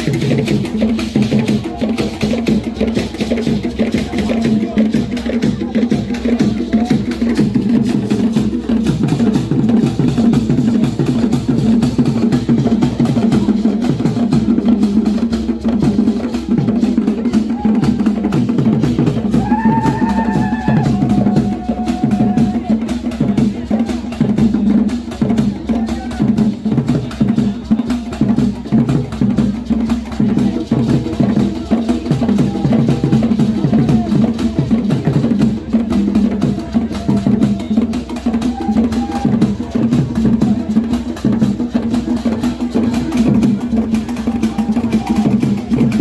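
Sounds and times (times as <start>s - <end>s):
fast percussion music: 0.0s - 46.0s.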